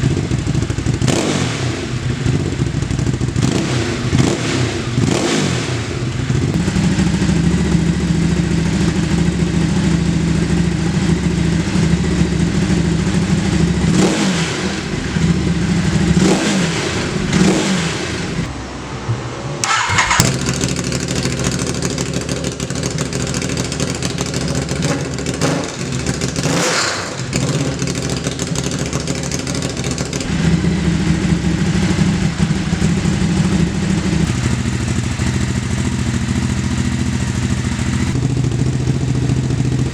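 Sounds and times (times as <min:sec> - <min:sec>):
motorcycle engine revving: 0:00.0 - 0:39.9
sharp crack: 0:26.5 - 0:27.9.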